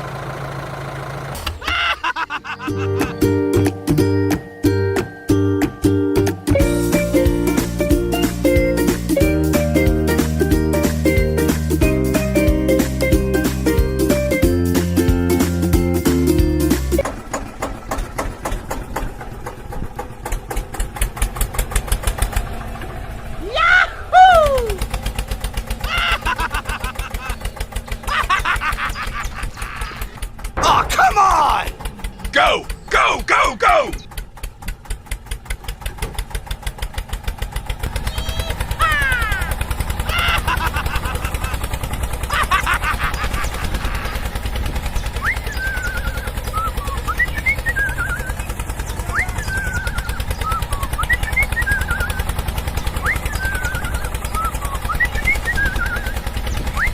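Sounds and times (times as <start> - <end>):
small engine idling: 0.0 - 23.4, 24.0 - 56.9
background music: 2.2 - 17.0.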